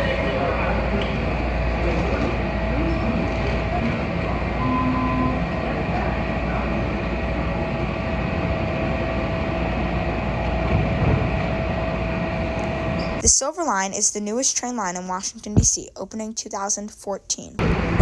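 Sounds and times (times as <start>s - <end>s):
train running noise: 0.0s - 13.4s, 15.1s - 15.9s
constant whine: 0.0s - 14.6s.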